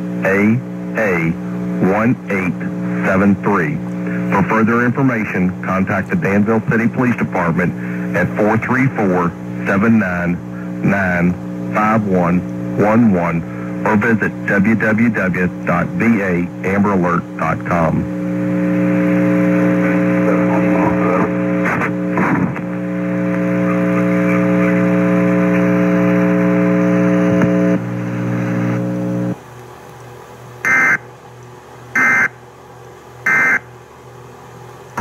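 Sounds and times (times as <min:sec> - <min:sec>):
radio hiss: 0:00.0 - 0:29.4, 0:30.6 - 0:31.0, 0:32.0 - 0:32.4, 0:33.2 - 0:33.7
buzzing hum: 0:00.0 - 0:35.0
loud data bursts: 0:30.6 - 0:31.1, 0:31.9 - 0:32.4, 0:33.2 - 0:33.7.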